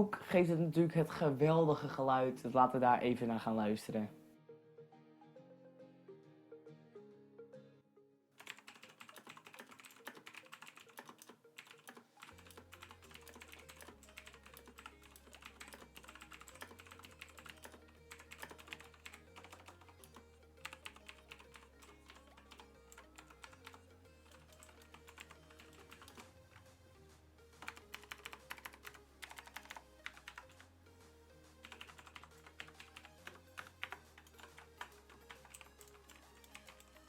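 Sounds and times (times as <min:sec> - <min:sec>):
background music: 0:00.0 - 0:37.0
mechanical keyboard typing: 0:08.4 - 0:26.7, 0:27.6 - 0:30.7, 0:31.6 - 0:37.0.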